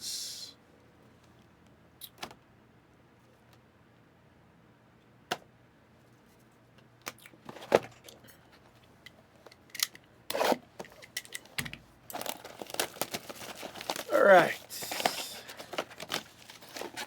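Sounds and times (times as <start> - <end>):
plastic and cardboard rustling: 7.4 - 8.7, 10.3 - 17.0
packaging clicks: 10.8 - 14.1, 14.8 - 17.0.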